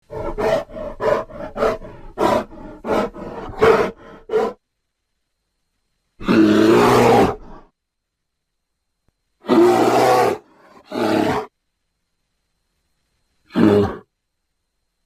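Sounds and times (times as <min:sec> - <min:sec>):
bear growling: 0:00.0 - 0:04.6, 0:06.2 - 0:07.7, 0:09.4 - 0:11.5.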